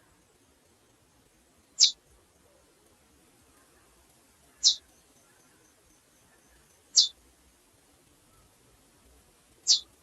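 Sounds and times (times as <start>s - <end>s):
bird chirp: 0.0s - 2.7s, 4.4s - 7.2s, 9.6s - 10.0s.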